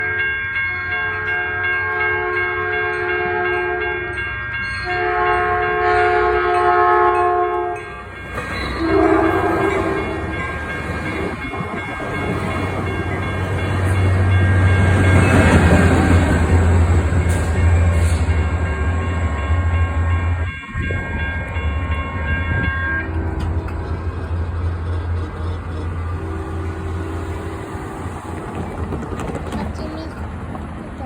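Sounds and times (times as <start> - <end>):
train horn blasts: 0.0 - 4.0, 4.8 - 7.9, 8.6 - 10.4, 26.1 - 27.6
train running past: 0.0 - 31.0.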